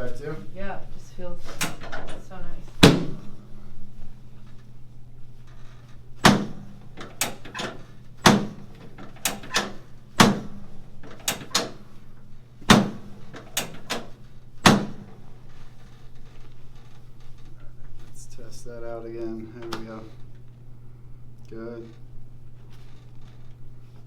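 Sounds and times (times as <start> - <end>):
faint low hum: 0.0 - 24.0
chiropractic adjustment clunks: 1.4 - 3.5, 5.4 - 20.5.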